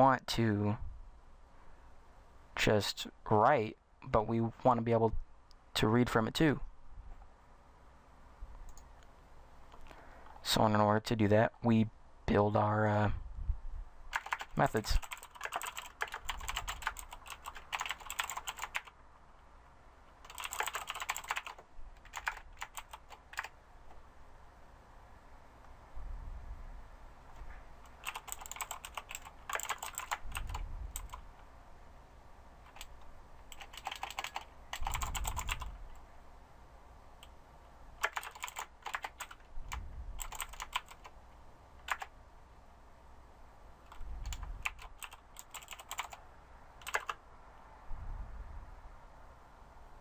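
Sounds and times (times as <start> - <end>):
typing on computer keyboard: 14.1 - 19.0, 20.2 - 23.5, 27.9 - 31.2, 32.7 - 35.8, 38.0 - 39.5, 40.2 - 41.1, 41.8 - 42.1, 43.9 - 46.2, 46.8 - 47.2.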